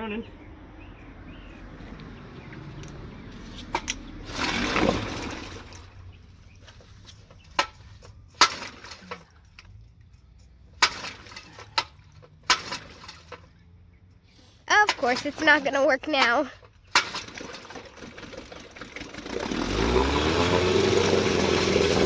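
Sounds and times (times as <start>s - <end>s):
sharp clicks and knocks: 3.6s - 5.1s.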